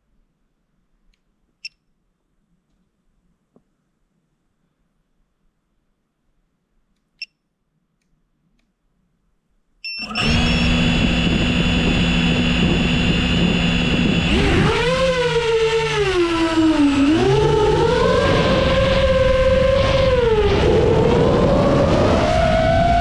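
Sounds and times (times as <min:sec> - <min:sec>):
click: 0:01.1 - 0:01.8, 0:06.9 - 0:07.4, 0:08.0 - 0:08.8
drone motors whirring: 0:10.0 - 0:23.0.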